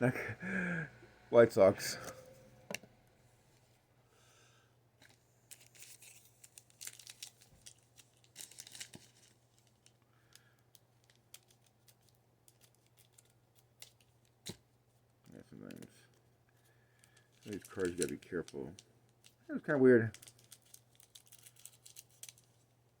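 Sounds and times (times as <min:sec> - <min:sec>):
rustling card wrapping: 0:05.0 - 0:14.6, 0:15.4 - 0:22.8.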